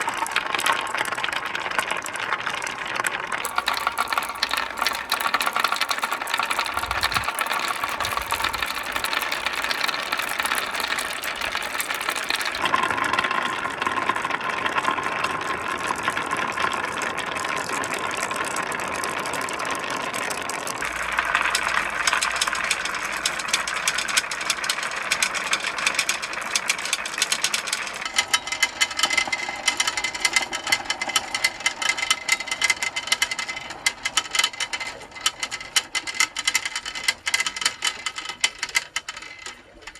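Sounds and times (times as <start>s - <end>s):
marbles rattling along track: 3.4s - 12.7s.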